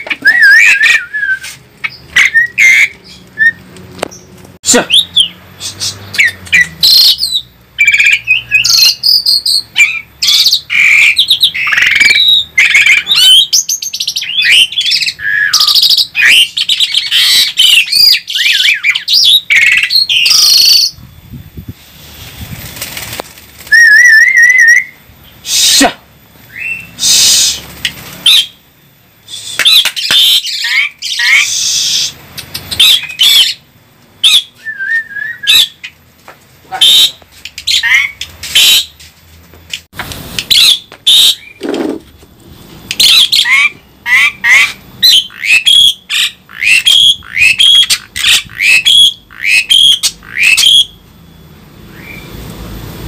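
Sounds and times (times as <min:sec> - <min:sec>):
starling squawking and whistling: 0:00.0 - 0:03.6, 0:04.8 - 0:21.0, 0:23.7 - 0:25.9, 0:26.5 - 0:28.6, 0:29.3 - 0:33.6, 0:34.2 - 0:36.0, 0:36.7 - 0:38.9, 0:40.5 - 0:42.0, 0:43.0 - 0:51.0, 0:51.9 - 0:52.4.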